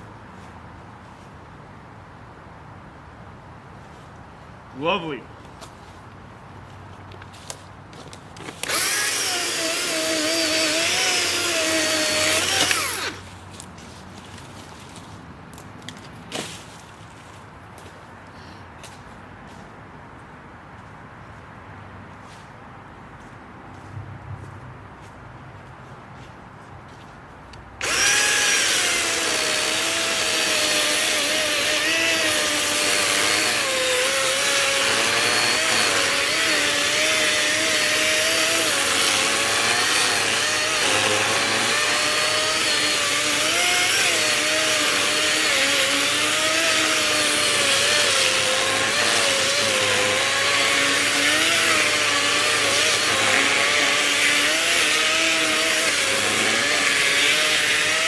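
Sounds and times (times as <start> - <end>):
electric chainsaw cutting wood: 8.4 - 13.3, 27.8 - 58.0.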